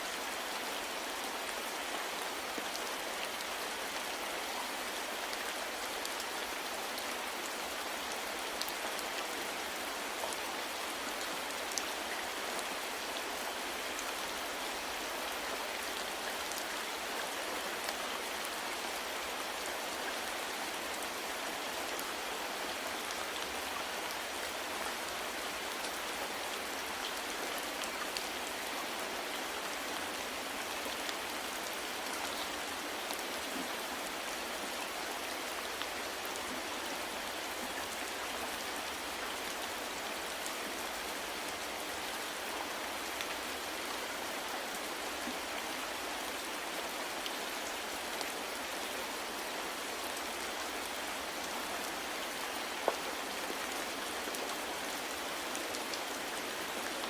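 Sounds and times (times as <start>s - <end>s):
soft rain falling: 0.0s - 57.0s.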